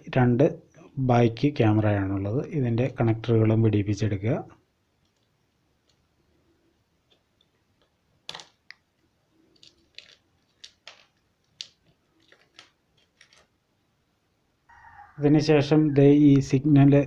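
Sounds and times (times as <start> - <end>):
small phone parts clicking: 9.5 - 13.5.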